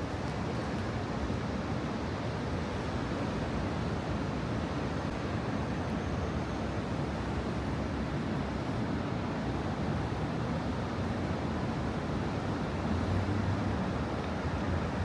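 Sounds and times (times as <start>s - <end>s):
low rumble of traffic: 8.1s - 15.0s.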